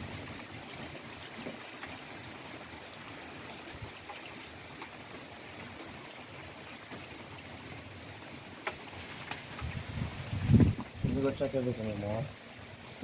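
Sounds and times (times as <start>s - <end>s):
steady rain falling: 0.0s - 13.0s
raindrop hits: 8.6s - 13.0s.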